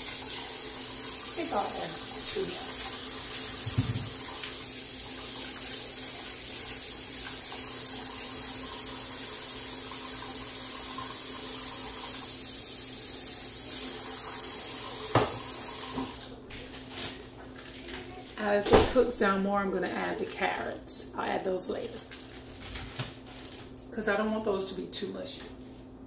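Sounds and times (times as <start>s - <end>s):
kitchen tap running: 0.0s - 16.3s.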